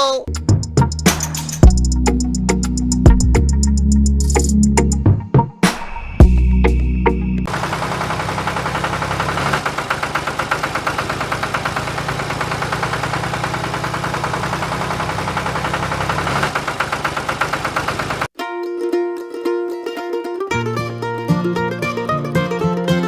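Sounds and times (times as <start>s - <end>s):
small engine chugging: 7.5s - 18.3s.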